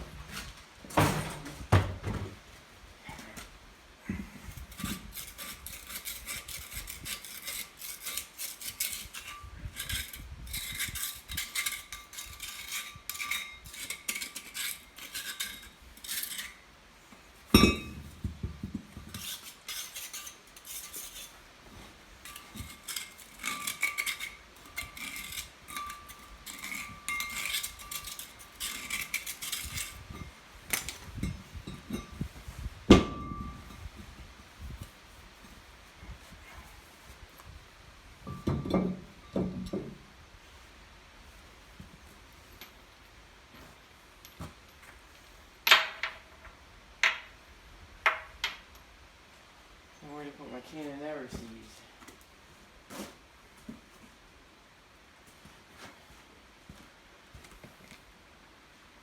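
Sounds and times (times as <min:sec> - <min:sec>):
loud metal clunks: 0:00.9 - 0:02.4
metal tools clinking and rattling: 0:17.6 - 0:18.1, 0:22.2 - 0:32.3.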